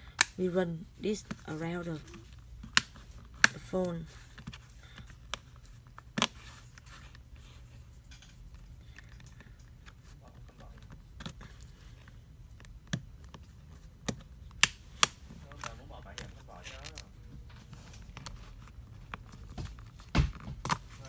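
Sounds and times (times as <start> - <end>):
low steady hum: 0.0 - 21.0
plastic scraping and clicking: 8.1 - 21.0.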